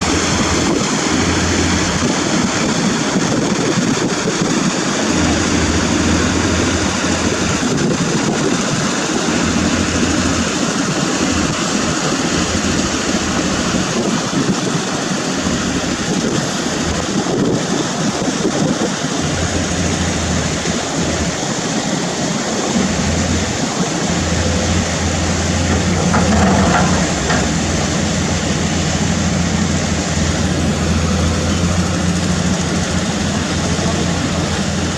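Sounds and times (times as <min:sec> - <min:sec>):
truck diesel engine droning: 0:00.0 - 0:08.4, 0:09.0 - 0:14.3, 0:19.1 - 0:34.9.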